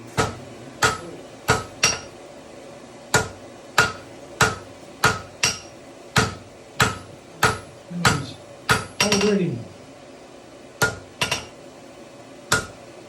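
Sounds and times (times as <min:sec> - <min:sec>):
hammers striking hot steel on anvil: 0:00.1 - 0:02.2, 0:03.1 - 0:09.4, 0:10.8 - 0:11.6, 0:12.5 - 0:12.8.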